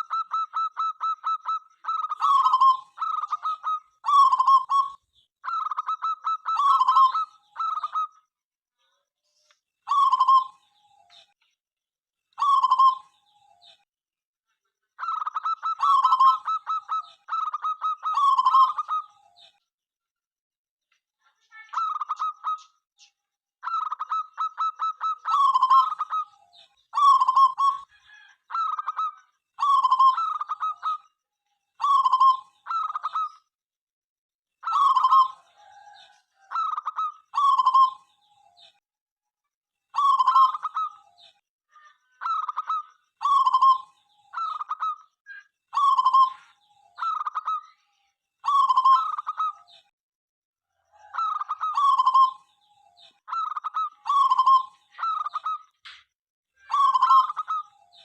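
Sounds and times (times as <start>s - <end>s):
dove cooing: 0.0s - 8.1s, 12.4s - 13.1s, 15.0s - 19.2s, 21.8s - 22.6s, 23.6s - 31.0s, 31.8s - 33.4s, 34.6s - 38.0s, 40.0s - 41.2s, 42.2s - 45.0s, 45.7s - 47.6s, 48.5s - 49.6s, 50.8s - 52.4s, 53.0s - 55.6s, 56.7s - 58.0s.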